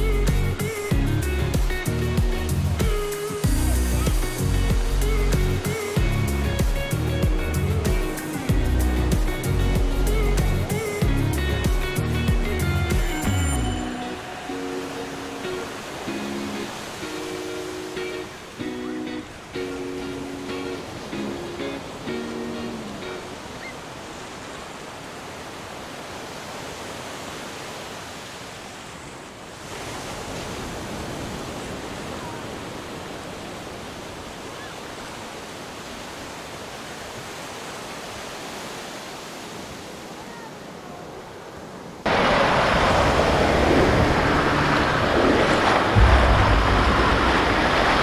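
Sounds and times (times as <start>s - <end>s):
ukulele music: 0.0s - 23.2s
ocean surf washing: 0.0s - 48.0s
loud rushing noise: 42.1s - 48.0s.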